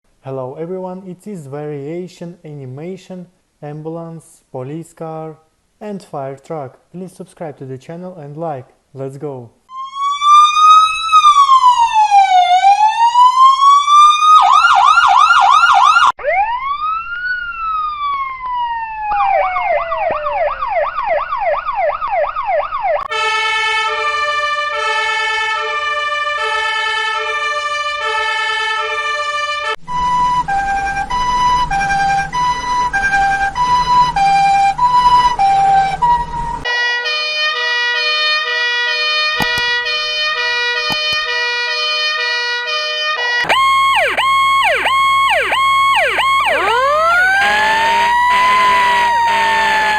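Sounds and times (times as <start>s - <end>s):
emergency sirens: 9.7s - 42.5s, 43.2s - 49.9s.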